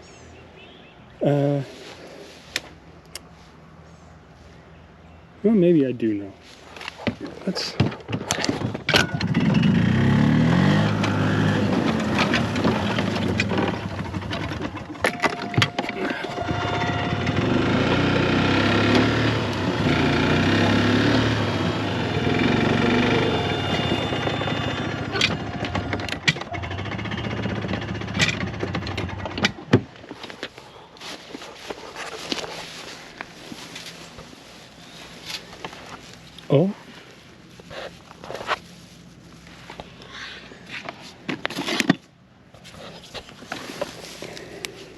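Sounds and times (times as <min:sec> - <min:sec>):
small golf cart engine running: 0:07.6 - 0:37.0.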